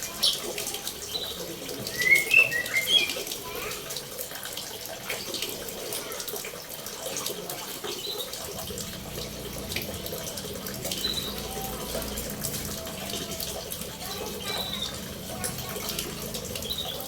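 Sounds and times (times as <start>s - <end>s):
running water: 0.0s - 17.0s
high bird chirps: 1.9s - 3.2s.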